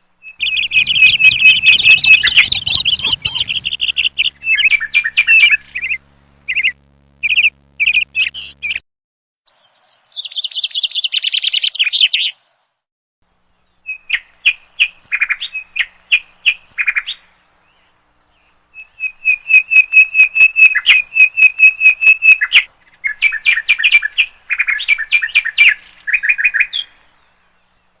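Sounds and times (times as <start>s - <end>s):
bird chirping: 0.2s - 8.8s, 9.5s - 12.6s.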